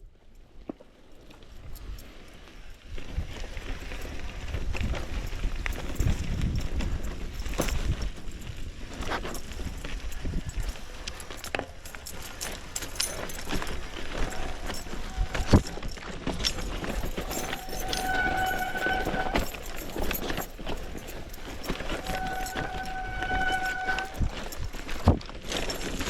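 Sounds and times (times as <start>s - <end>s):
mountain bike rattling over rough ground: 0.0s - 26.0s
disc brakes squealing: 12.6s - 25.0s.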